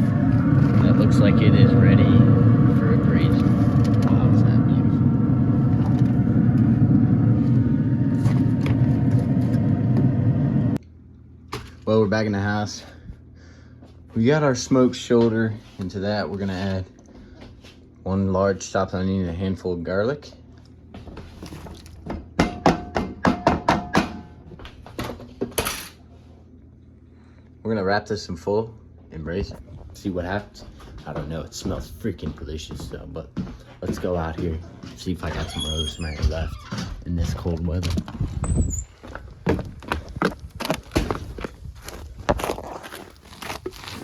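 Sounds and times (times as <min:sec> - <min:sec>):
motor humming: 0:00.0 - 0:10.8.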